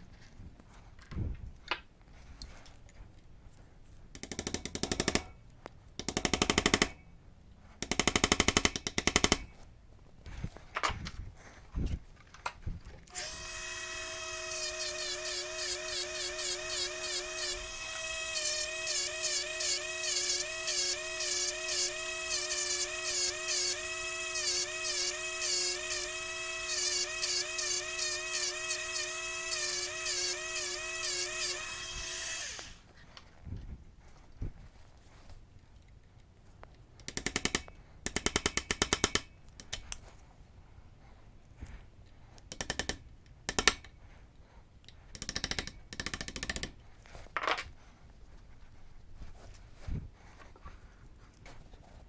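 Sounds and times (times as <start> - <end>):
rotary tool grinding metal: 13.1 - 33.0.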